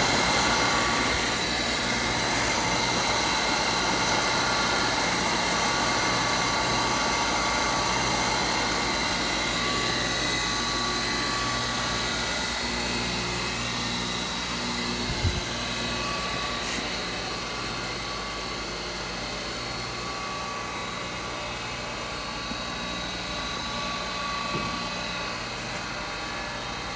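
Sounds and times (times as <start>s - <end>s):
grinder hum and whine: 0.0s - 26.9s.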